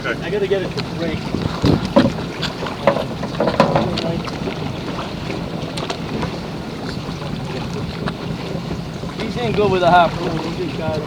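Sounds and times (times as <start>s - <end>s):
boat engine running: 0.0s - 11.0s
wind on microphone: 0.0s - 11.0s
sharp knocks: 1.6s - 4.2s.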